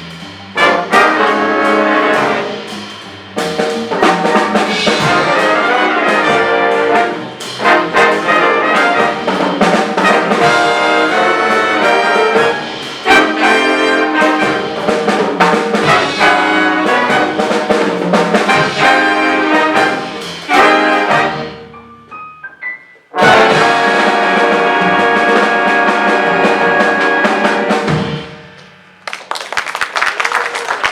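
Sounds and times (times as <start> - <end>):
jazz big band playing swing: 0.0 - 29.0
audience applause: 29.0 - 30.9.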